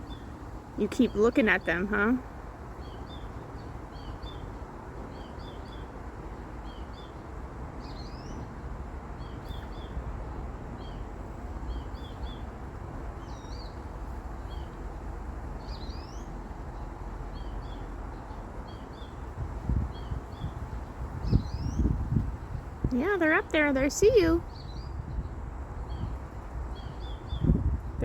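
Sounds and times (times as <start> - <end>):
small birds chirping: 0.0 - 28.0.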